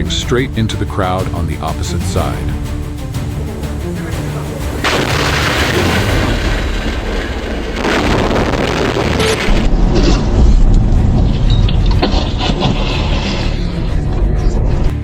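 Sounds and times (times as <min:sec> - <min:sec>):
deep rumble: 0:00.0 - 0:15.0
vehicle crash impact crunch: 0:04.8 - 0:13.5.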